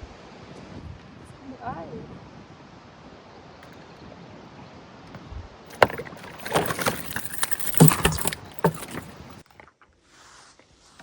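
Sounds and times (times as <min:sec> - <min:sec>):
gear knocking and rattling in boat: 0:05.7 - 0:09.4.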